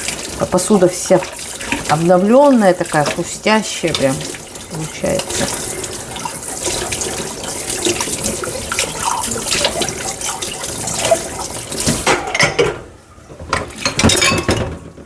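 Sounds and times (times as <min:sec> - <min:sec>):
kitchen tap running into sink: 0:00.0 - 0:12.6
dishes knocking: 0:11.0 - 0:12.8, 0:13.4 - 0:15.0
crockery clinking: 0:13.5 - 0:14.9.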